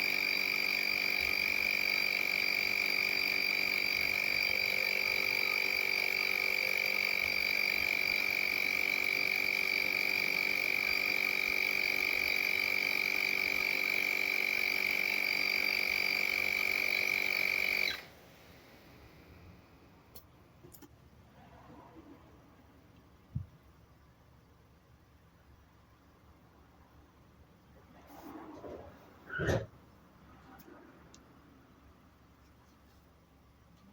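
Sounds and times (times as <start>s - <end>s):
air compressor whining: 0.0s - 19.3s.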